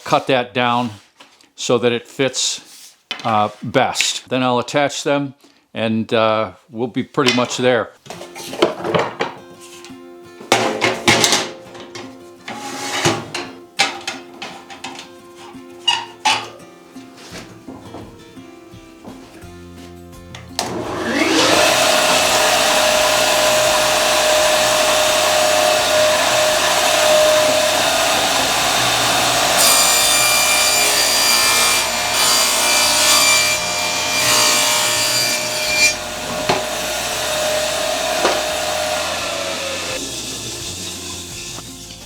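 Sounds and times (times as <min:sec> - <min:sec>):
table saw motor whine: 0:20.6 - 0:41.6
saw blade cutting wood: 0:20.6 - 0:42.0.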